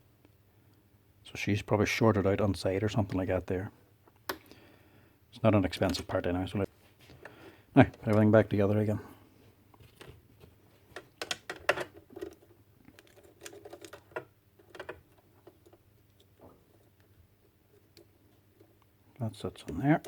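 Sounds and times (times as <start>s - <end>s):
plastic parts clicking: 10.9s - 17.1s.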